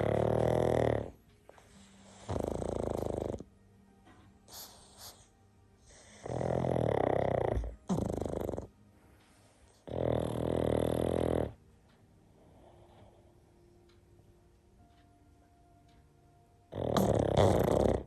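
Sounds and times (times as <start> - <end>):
dog breathing quietly: 0.0 - 3.5, 4.2 - 6.7
dog snoring: 0.0 - 3.6, 4.4 - 8.8, 9.7 - 11.6, 16.7 - 18.0.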